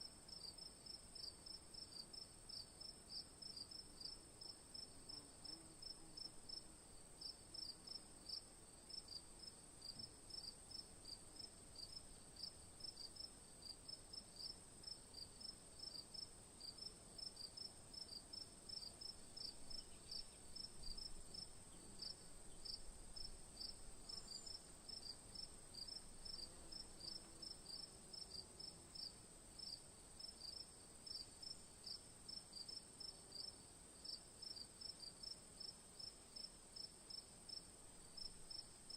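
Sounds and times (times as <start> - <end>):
faint high-pitched hiss: 0.0 - 38.9
cricket chirping: 0.3 - 38.9.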